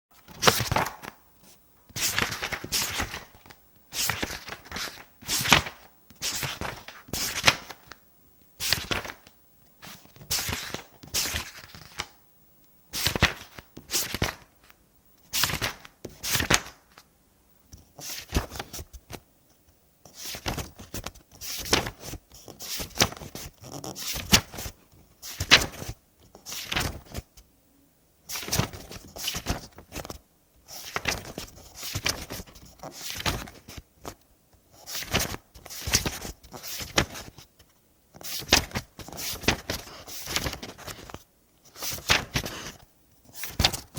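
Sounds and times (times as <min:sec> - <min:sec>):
book pages turning: 0:00.2 - 0:08.0, 0:08.6 - 0:12.2, 0:13.0 - 0:16.8, 0:17.8 - 0:19.2, 0:20.1 - 0:27.2, 0:28.3 - 0:34.2, 0:34.8 - 0:37.5, 0:38.2 - 0:43.9.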